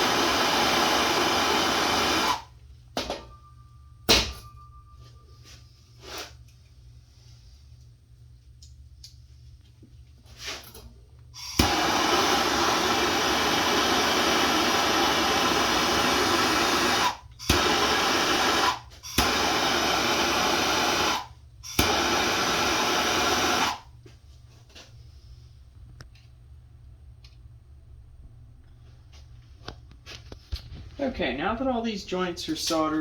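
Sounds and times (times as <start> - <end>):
gas torch flame hissing: 0.0 - 2.5, 11.4 - 23.9
torch ignition click: 11.4 - 22.3.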